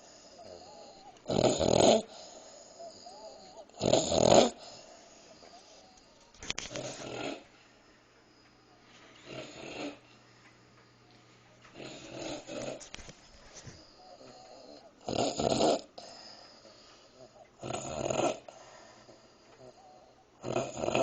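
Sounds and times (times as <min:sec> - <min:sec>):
woman snoring: 0:00.0 - 0:05.0, 0:06.7 - 0:07.5, 0:11.8 - 0:12.8, 0:14.0 - 0:18.8, 0:19.6 - 0:21.0.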